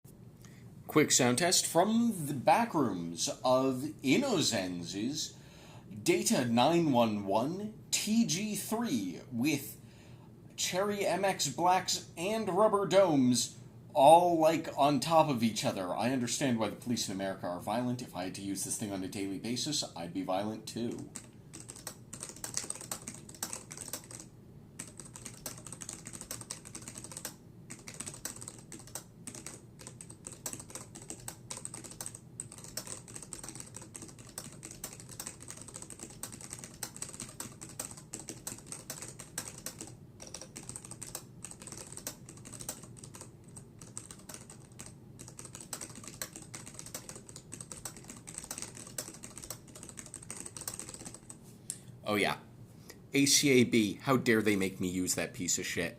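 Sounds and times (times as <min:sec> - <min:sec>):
keyboard typing: 0:20.9 - 0:51.4.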